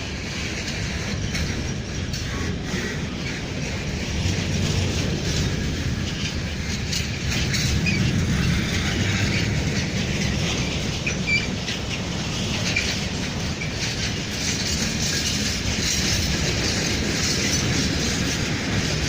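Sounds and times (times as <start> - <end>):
train wheels rumbling: 0.0 - 19.0
wheels clicking over rail joints: 0.0 - 19.0
high wheel squeak: 5.0 - 19.0.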